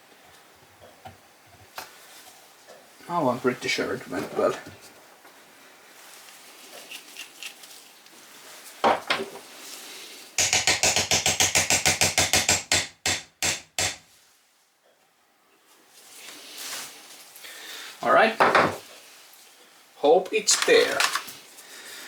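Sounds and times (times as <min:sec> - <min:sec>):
knock: 0:18.4 - 0:18.8.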